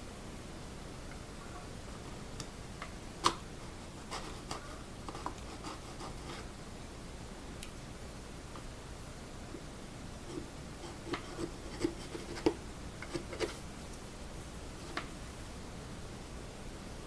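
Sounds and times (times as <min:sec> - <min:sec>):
chisel scraping wood: 0:10.3 - 0:13.6.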